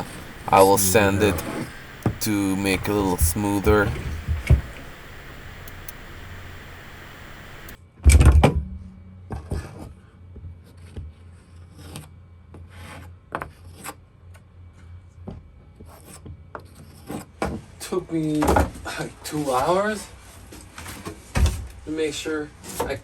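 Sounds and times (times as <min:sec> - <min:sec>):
faint hiss: 0:00.0 - 0:07.8.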